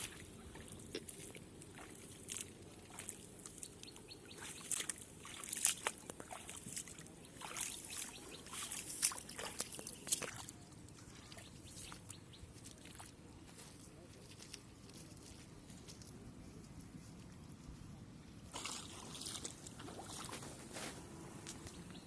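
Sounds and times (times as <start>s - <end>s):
shallow water splashing: 0.0s - 13.2s, 18.5s - 21.1s.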